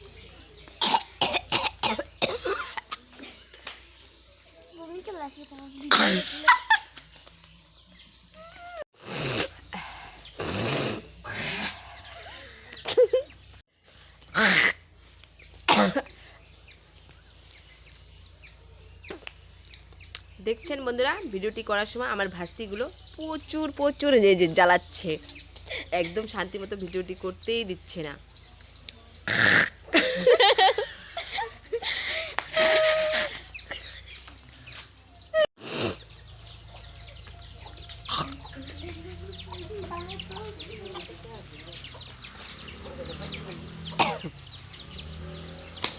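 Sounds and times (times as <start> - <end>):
small birds chirping: 0.0 - 45.9
woman coughing: 0.8 - 3.2, 5.9 - 6.7, 15.7 - 16.1, 43.9 - 44.4.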